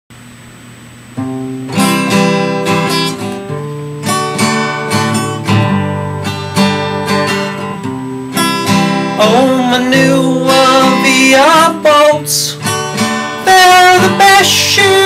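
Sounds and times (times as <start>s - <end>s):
acoustic guitar strumming: 1.1s - 15.0s.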